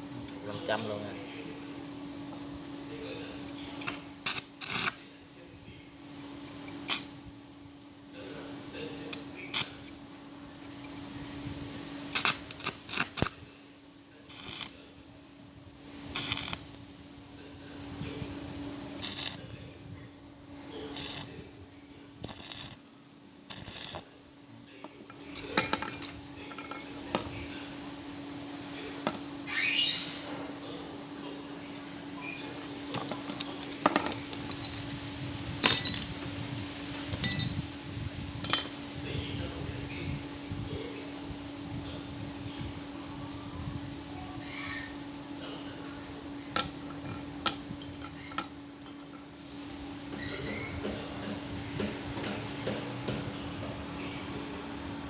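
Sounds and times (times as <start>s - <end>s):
steady low hum: 0.0s - 55.0s
metal pieces clinking: 25.1s - 27.0s, 33.0s - 34.9s, 46.6s - 49.2s.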